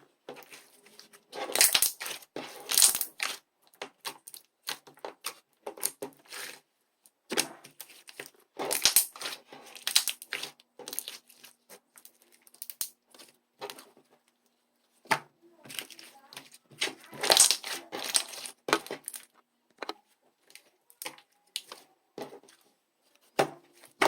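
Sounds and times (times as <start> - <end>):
crisp crackling and crunching: 0.3 - 6.6, 7.3 - 13.9, 15.6 - 24.0.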